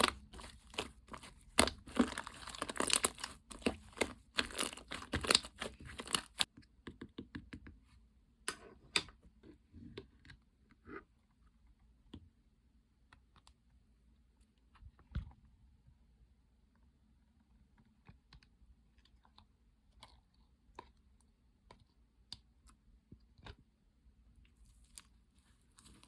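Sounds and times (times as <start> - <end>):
slime crackling and popping: 0.0 - 6.5.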